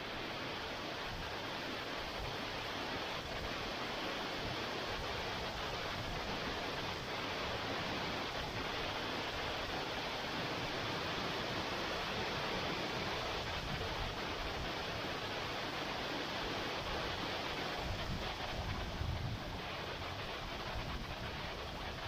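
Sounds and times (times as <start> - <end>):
waterfall roaring: 0.0 - 22.0.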